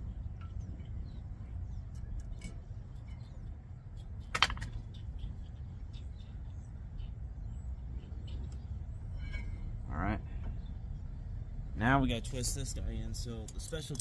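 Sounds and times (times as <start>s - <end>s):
low steady rumble: 0.0s - 14.0s
metal tools clicking and clinking: 13.4s - 14.0s.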